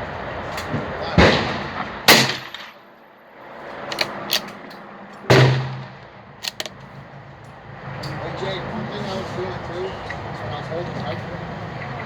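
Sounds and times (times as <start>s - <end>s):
rifle shots with echo: 1.2s - 2.8s, 5.3s - 6.7s
rifle bolt clicks: 3.9s - 4.7s, 6.4s - 6.8s.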